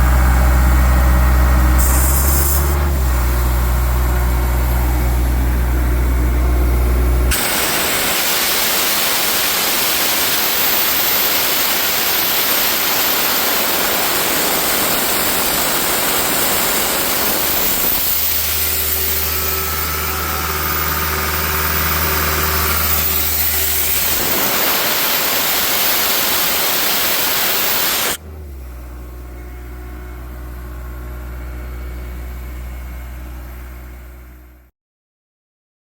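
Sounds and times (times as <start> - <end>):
compressed air hissing: 1.8 - 2.9, 7.3 - 28.2
diesel engine idling: 2.7 - 7.3, 16.3 - 24.0.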